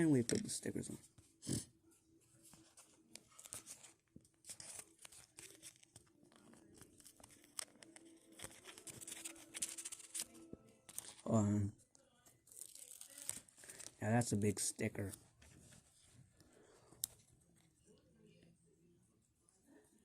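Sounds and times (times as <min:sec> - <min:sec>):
sticker sheet rustling: 0:02.4 - 0:11.3.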